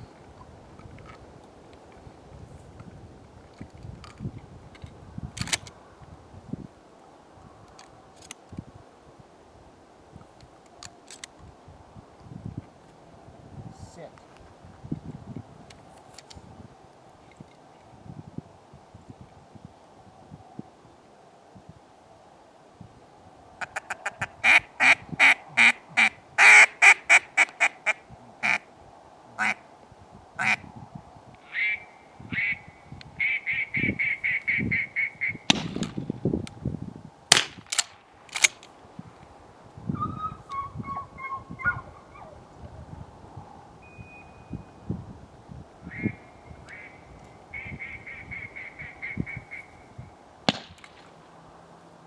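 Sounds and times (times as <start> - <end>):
duck calls quacking: 23.6 - 28.6, 29.4 - 29.6, 30.4 - 30.6
sharp cracks: 35.5 - 36.2, 37.3 - 38.8, 50.5 - 51.3.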